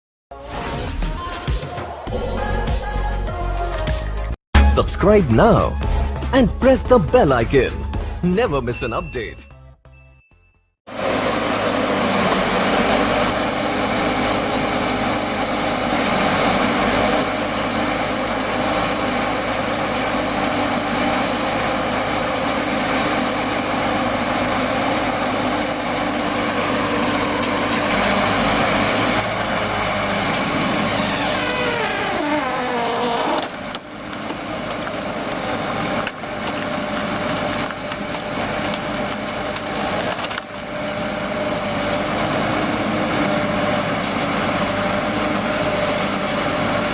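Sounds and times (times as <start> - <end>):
wood chipper running: 10.9 - 46.9
wood splintering and crushing: 26.9 - 46.9.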